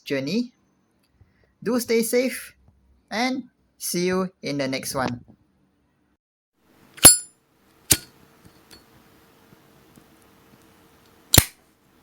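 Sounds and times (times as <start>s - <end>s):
sharp metallic click: 7.0s - 7.3s, 7.9s - 8.1s, 11.3s - 11.6s.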